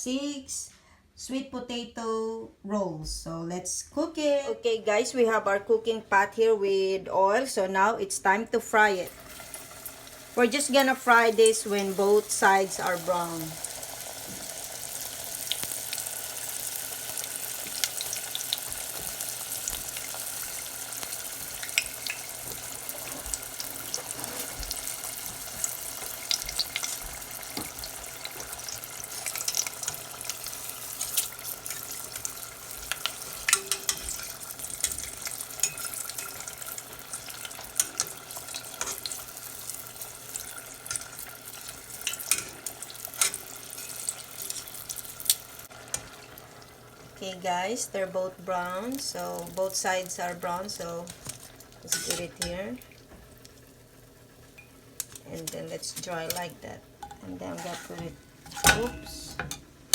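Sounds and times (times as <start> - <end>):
food deep-frying in oil: 8.9 - 59.9
oil popping and crackling: 9.2 - 47.3, 48.7 - 57.2.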